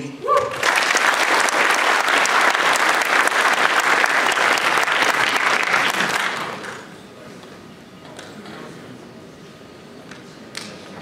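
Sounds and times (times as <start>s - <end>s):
audience applauding: 0.5s - 6.9s.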